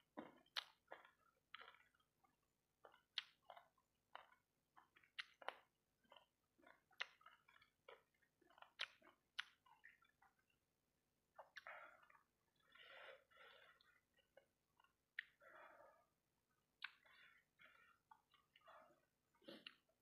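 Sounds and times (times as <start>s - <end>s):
chewing rice balls: 0.0s - 20.0s
mouth smacking and clicking: 2.8s - 10.4s, 14.8s - 15.6s, 16.8s - 17.3s, 19.4s - 19.9s.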